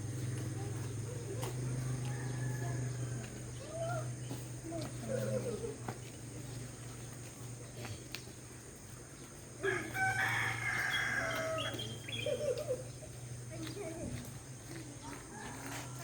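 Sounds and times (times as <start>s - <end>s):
rooster crowing: 1.9s - 3.4s, 9.6s - 12.2s, 15.3s - 16.0s.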